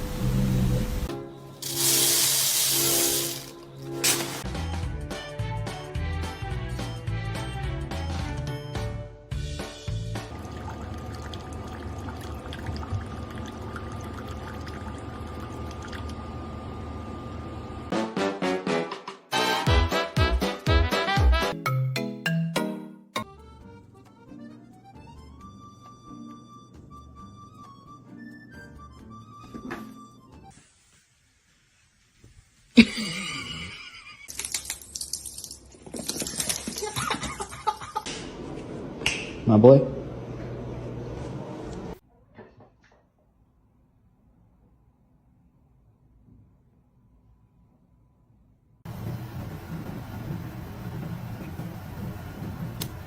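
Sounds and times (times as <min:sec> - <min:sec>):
lively music with a strong beat: 0:18.0 - 0:22.8.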